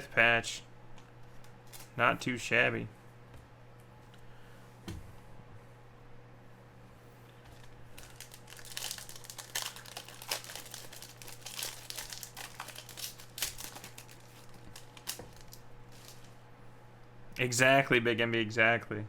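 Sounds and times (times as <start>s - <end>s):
foil wrapper crinkling: 7.5s - 16.4s.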